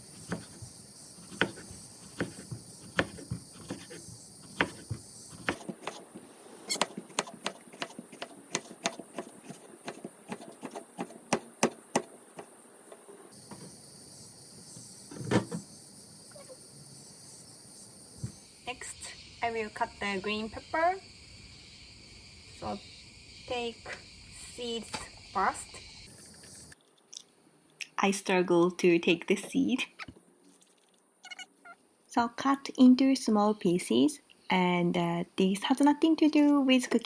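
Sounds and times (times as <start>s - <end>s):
knife chopping on cutting board: 0.2s - 6.0s.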